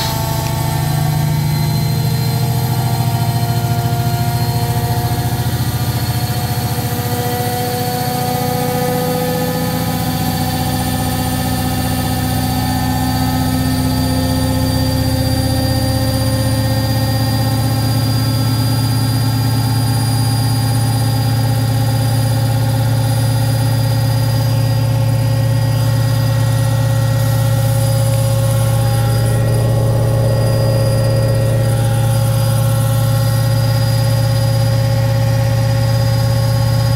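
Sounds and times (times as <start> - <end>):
washing machine motor hum: 0.0 - 7.1, 8.8 - 36.9
high whining tones: 24.5 - 34.7.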